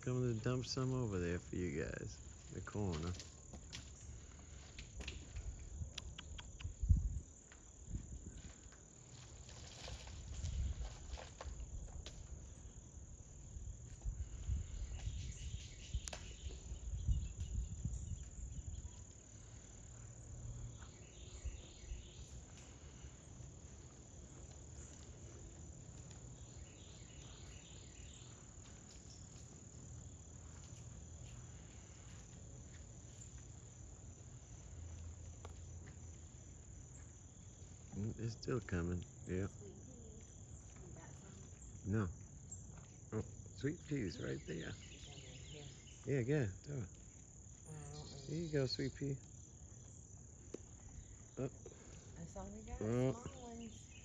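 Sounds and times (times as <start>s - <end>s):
insects chirping: 0.0s - 54.0s
footsteps: 21.9s - 38.8s.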